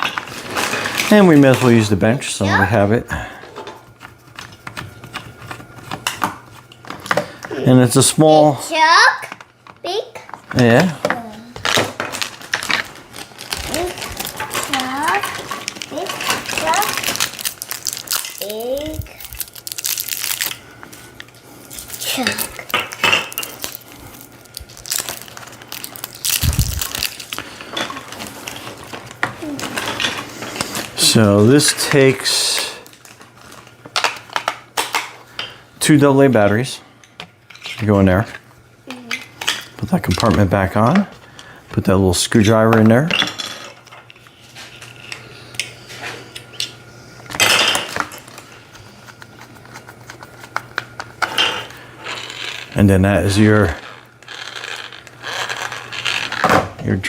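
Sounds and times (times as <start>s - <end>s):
steady low hum: 9.3s - 57.0s
plastic packaging crinkling: 11.6s - 31.2s, 47.3s - 56.5s.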